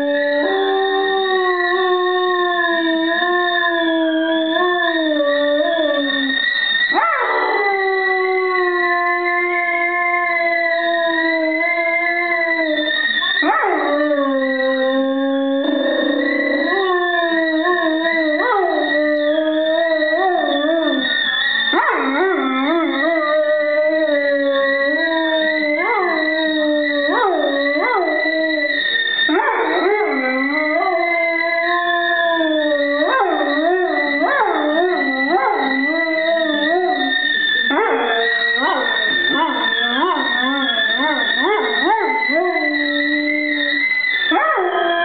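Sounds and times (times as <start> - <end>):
dog howling: 0.0 - 45.0
tea kettle whistling: 12.6 - 45.0.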